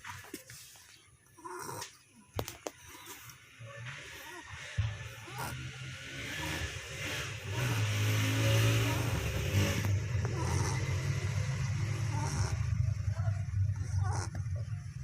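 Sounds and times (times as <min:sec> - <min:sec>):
puppy snoring: 0:01.3 - 0:02.1, 0:04.0 - 0:14.8.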